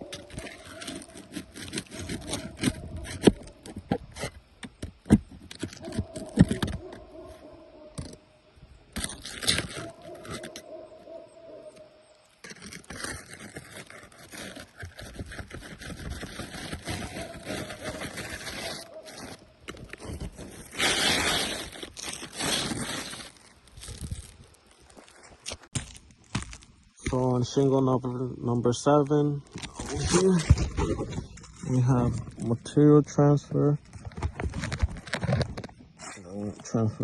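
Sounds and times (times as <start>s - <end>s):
hand tool scraping roof shingles: 0.0s - 7.0s, 8.9s - 10.7s, 12.4s - 24.4s, 29.5s - 32.5s, 33.9s - 36.8s.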